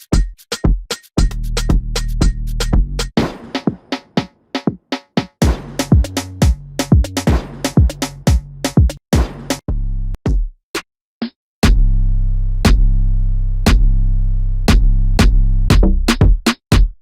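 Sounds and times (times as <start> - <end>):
drum machine hits: 0.0 - 9.7, 11.6 - 11.8, 14.7 - 17.0
percussion hits: 0.0 - 9.7.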